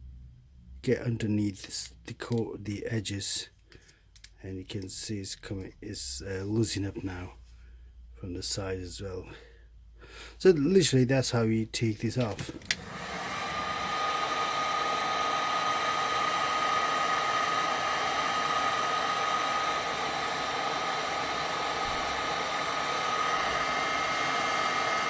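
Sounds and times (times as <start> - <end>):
hot-air blower running: 12.3 - 25.0.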